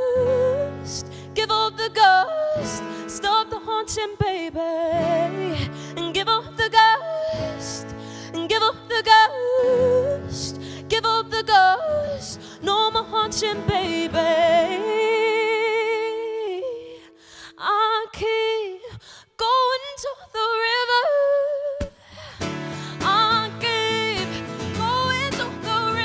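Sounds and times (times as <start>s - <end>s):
acoustic guitar accompaniment: 0.0s - 19.2s, 21.8s - 26.0s
woman singing wordless runs: 22.8s - 26.0s.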